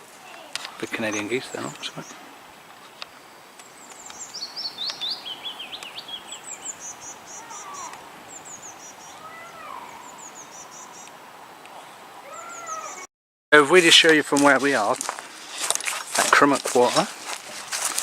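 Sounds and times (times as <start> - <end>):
outdoor hiss: 0.0 - 18.0
songbirds chirping and trilling: 0.2 - 13.1.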